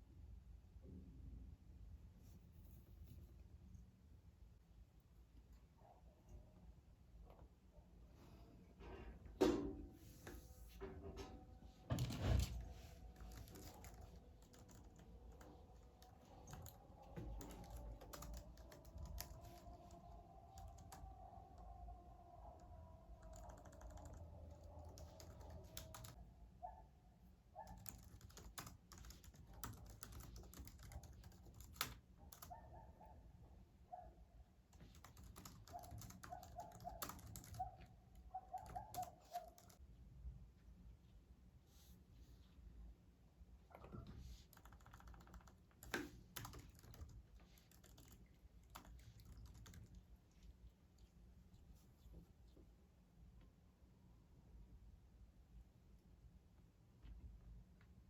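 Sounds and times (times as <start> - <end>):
faint clicks and taps: 13.2 - 21.2.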